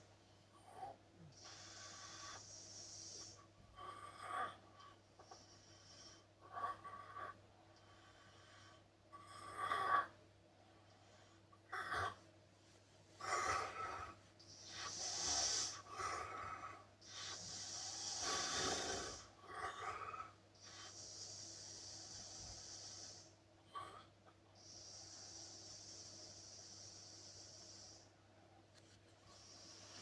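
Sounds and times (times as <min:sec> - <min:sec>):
man snoring: 0:13.2 - 0:24.0.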